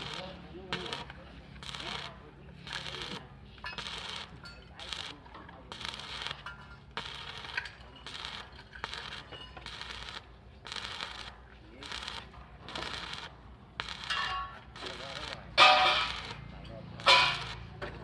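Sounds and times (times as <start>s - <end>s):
welding arc crackling: 0.0s - 18.0s.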